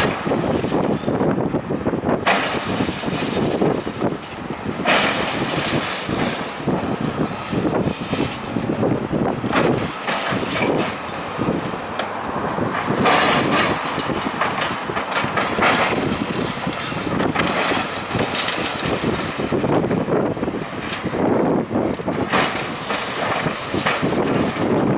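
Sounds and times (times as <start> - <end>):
heavy work noise: 2.1 - 20.1
debris crashing down: 2.2 - 8.4, 12.7 - 19.7.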